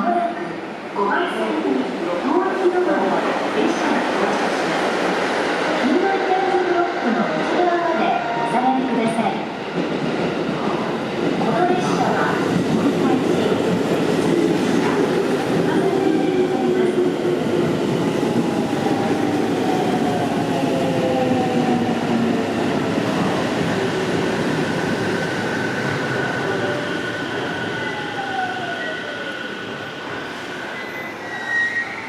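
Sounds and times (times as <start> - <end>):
high brake squeal: 30.3 - 32.0.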